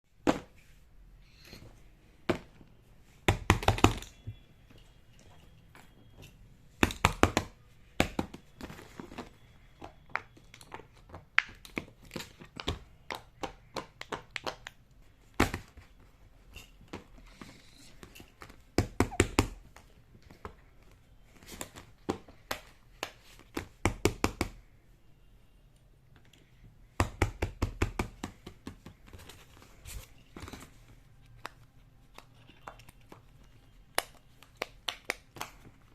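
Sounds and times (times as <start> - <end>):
plastic toys clicking and tapping: 6.2 - 15.6, 31.3 - 35.9
crinkling: 28.9 - 35.9.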